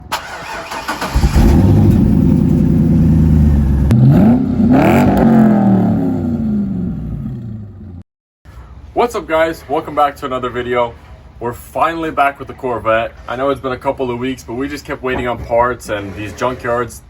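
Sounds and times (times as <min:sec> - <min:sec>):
car engine revving: 0:00.4 - 0:08.0.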